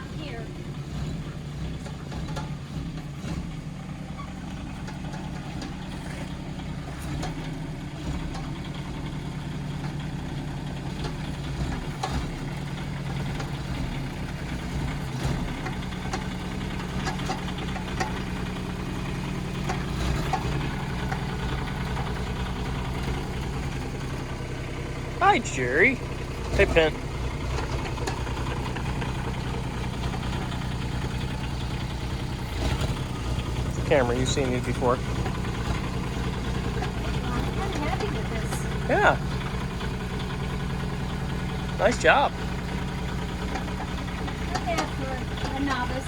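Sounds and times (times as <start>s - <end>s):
diesel engine running at low revs: 0.0s - 46.0s.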